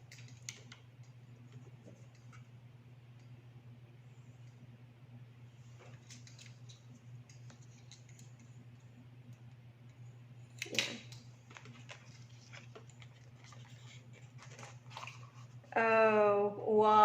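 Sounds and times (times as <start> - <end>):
steady low hum: 0.0 - 17.0
package rustling: 11.3 - 15.7.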